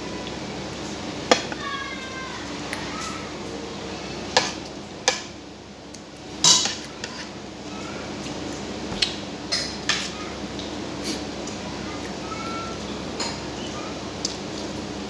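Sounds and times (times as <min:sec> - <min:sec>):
cutlery clinking against dishes: 0:04.4 - 0:05.3, 0:06.4 - 0:07.3, 0:08.9 - 0:10.1, 0:13.2 - 0:13.5.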